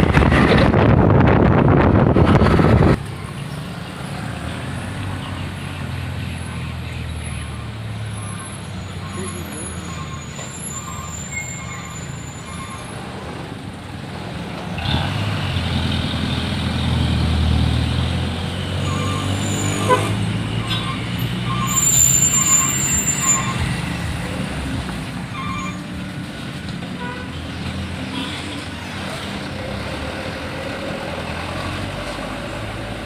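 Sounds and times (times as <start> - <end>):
heavy trucks passing: 0.0 - 33.0
high squeal: 7.2 - 13.0, 18.8 - 24.1, 25.3 - 25.9.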